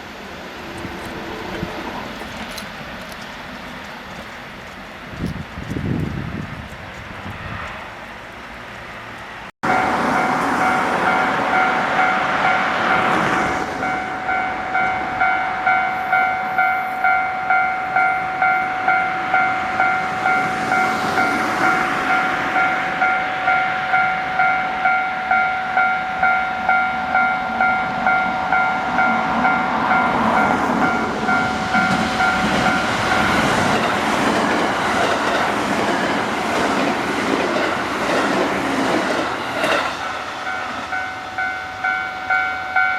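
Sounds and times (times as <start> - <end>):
crossing warning bell: 9.6 - 42.9
train wheels clattering: 30.0 - 41.1.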